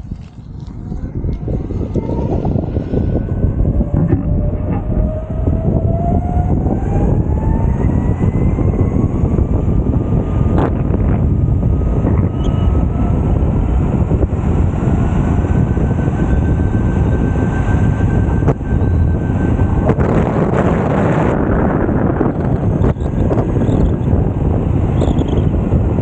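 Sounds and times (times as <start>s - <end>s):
electric motor whine: 0.0s - 26.0s
wind on microphone: 0.0s - 26.0s.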